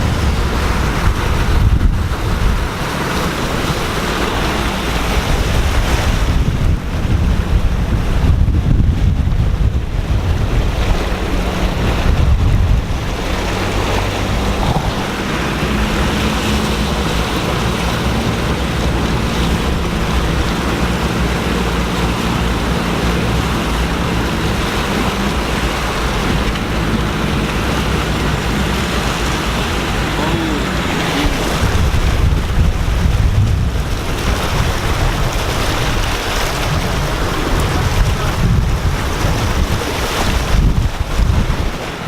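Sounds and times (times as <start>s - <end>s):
water rushing against vehicle: 0.0s - 42.0s
car engine running: 9.6s - 40.0s.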